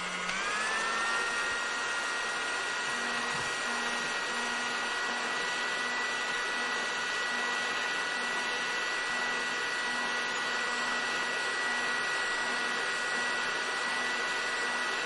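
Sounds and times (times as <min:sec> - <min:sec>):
hair dryer running: 0:00.0 - 0:15.0.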